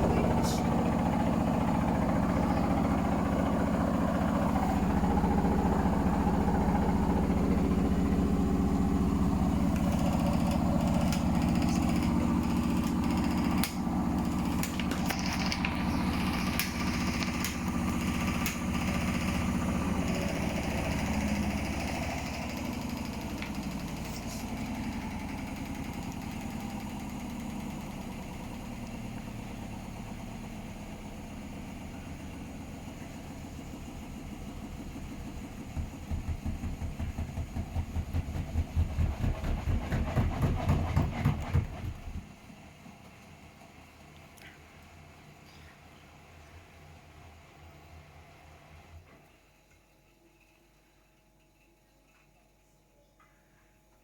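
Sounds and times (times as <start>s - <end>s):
washing machine rattling: 0.0s - 25.8s, 35.4s - 42.3s
washing machine drum humming: 0.0s - 30.4s, 33.8s - 43.8s.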